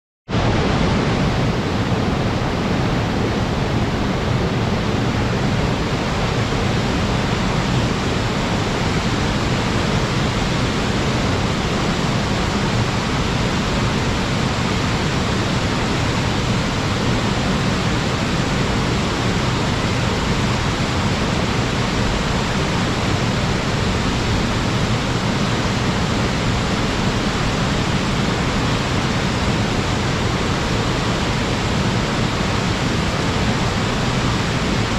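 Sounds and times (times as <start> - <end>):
waterfall rushing: 0.3 - 34.9.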